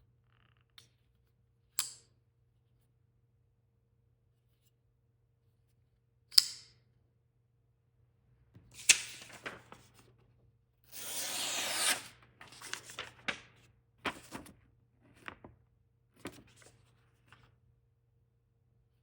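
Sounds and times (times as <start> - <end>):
packaging rubbing or tearing: 11.0 - 13.1
packaging rustling: 11.1 - 14.5.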